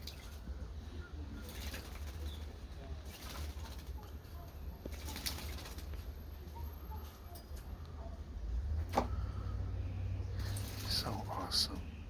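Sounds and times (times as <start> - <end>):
bird splashing wings in water: 0.0 - 0.4, 1.4 - 4.1, 4.9 - 6.0, 10.4 - 11.0.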